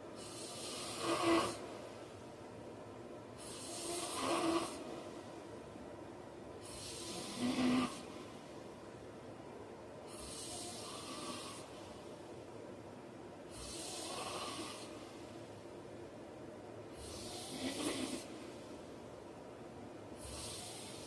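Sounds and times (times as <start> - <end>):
man snoring: 0.2 - 1.6, 3.4 - 4.8, 6.7 - 8.1, 13.6 - 14.9, 17.0 - 18.3.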